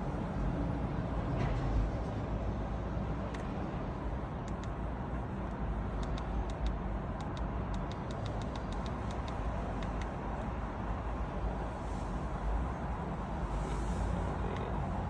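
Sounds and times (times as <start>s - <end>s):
light short clicks: 4.4s - 4.8s, 6.0s - 10.2s.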